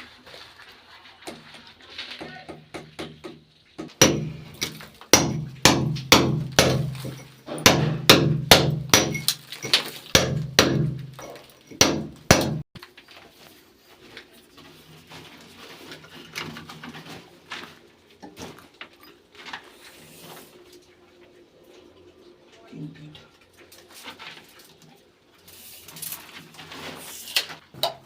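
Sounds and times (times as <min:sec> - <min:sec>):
loud hammer strikes: 0:02.7 - 0:09.4, 0:10.1 - 0:12.6.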